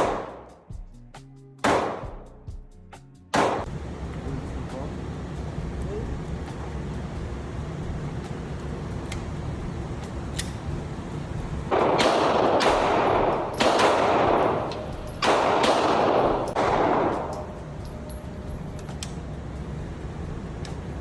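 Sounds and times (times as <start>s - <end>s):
distant gunshots: 0.0s - 0.5s, 1.6s - 2.3s, 3.4s - 3.7s, 11.7s - 17.6s
loud gunshots with echo: 0.0s - 0.5s, 1.6s - 2.3s, 3.3s - 3.7s, 11.7s - 17.6s.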